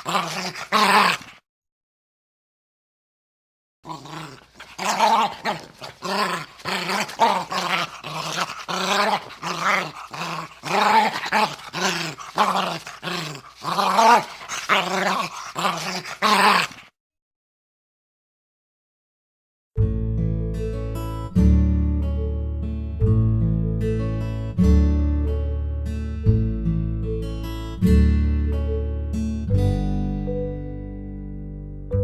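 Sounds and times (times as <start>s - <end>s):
dog growling: 0.0s - 1.4s, 3.9s - 16.9s.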